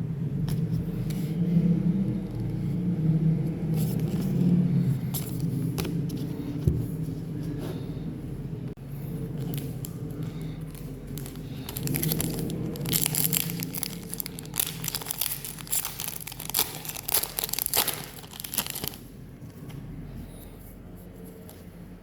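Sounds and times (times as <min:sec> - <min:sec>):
steady low hum: 0:00.0 - 0:22.0
wrapper tearing and crinkling: 0:11.2 - 0:19.0.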